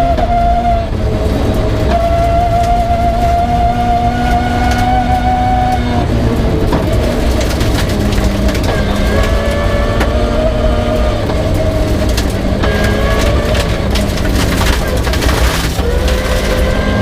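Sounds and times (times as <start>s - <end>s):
rally car engine revving: 0.0s - 17.0s
stones clattering against car: 6.6s - 10.3s, 11.3s - 17.0s.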